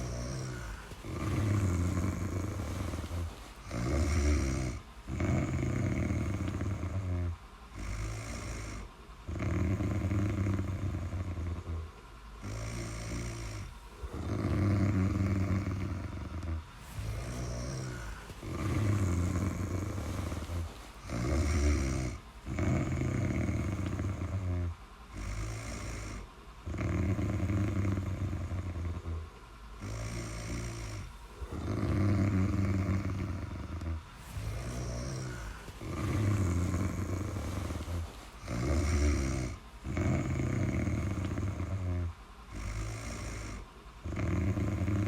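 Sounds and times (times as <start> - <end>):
rhythmic snoring: 0.0 - 45.0.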